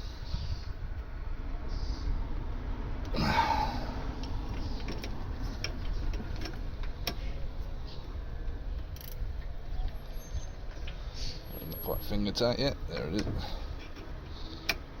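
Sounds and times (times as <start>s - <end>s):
low steady rumble: 0.0s - 14.3s
ratchet wrench ticking: 8.9s - 9.2s.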